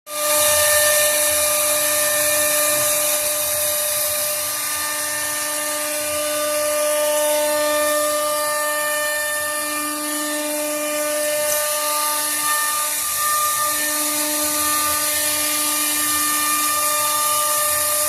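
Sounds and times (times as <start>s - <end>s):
router spindle high-pitched whine: 0.1s - 18.0s.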